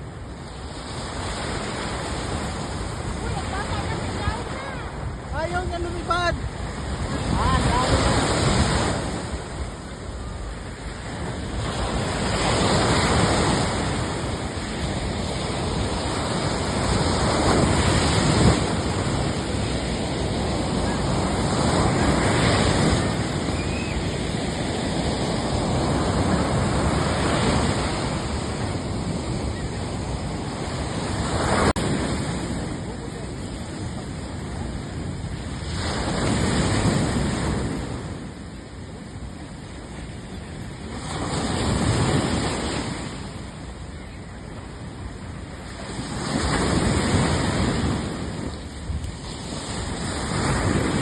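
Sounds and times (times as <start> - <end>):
waves washing in and receding: 0.0 - 51.0.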